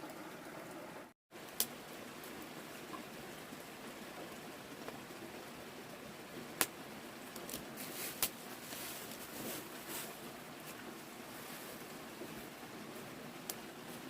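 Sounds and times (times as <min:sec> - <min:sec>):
rain falling: 0:00.0 - 0:14.0
rustling: 0:07.3 - 0:14.0.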